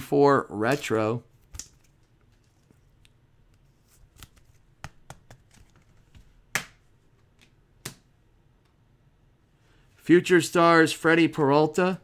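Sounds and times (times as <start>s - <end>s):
cards clicking: 4.0s - 5.9s.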